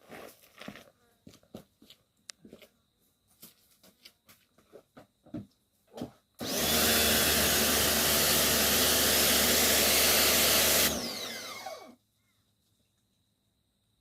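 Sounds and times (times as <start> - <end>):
pressure washer motor hum: 6.4 - 11.9.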